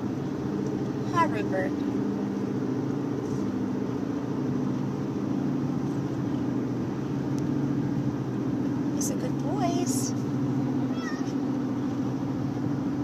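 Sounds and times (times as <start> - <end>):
car engine and road hum: 0.0 - 13.0.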